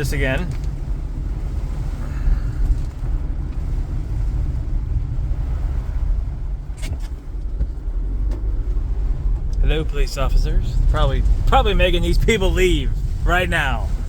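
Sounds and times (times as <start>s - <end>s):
car driving on wet road: 0.0s - 14.0s.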